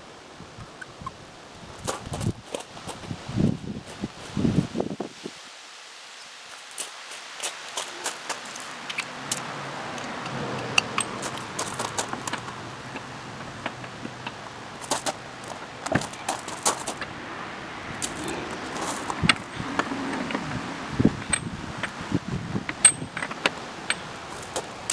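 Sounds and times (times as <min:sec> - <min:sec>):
metal tools clinking and clattering: 0:07.5 - 0:09.6, 0:10.6 - 0:12.6, 0:14.8 - 0:17.0, 0:18.0 - 0:19.6, 0:23.9 - 0:24.9.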